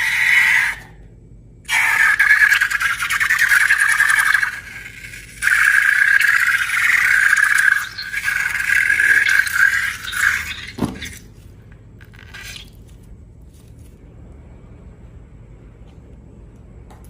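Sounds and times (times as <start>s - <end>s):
air squealing out of balloon: 0.0s - 1.0s.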